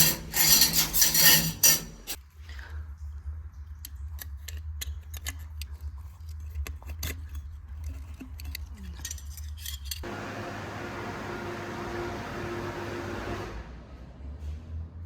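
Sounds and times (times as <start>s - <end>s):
metallic clicks of tools: 3.8s - 10.0s.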